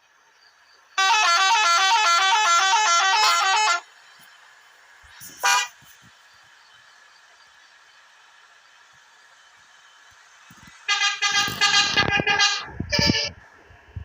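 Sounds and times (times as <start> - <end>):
musical air horn playing notes: 1.0 - 3.8, 10.9 - 13.3.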